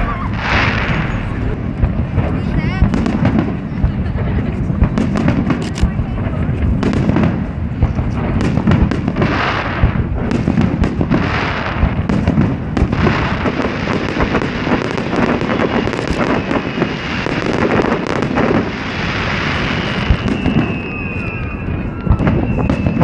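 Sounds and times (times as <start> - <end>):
fireworks bangs and crackling: 0.0 - 23.0.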